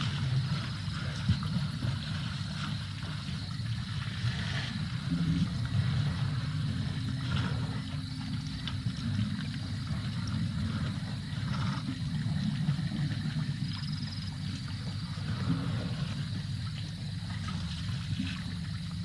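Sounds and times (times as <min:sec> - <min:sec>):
water sloshing and gurgling: 0:00.0 - 0:19.0
elephants rumbling: 0:09.0 - 0:13.6.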